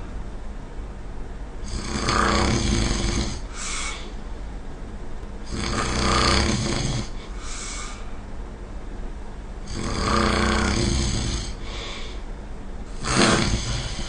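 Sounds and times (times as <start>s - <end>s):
person snoring: 1.6s - 4.1s, 5.5s - 8.0s, 9.7s - 12.2s, 13.0s - 14.0s
breathy hiss: 1.6s - 4.2s, 5.5s - 8.2s, 9.7s - 12.3s, 12.9s - 14.0s.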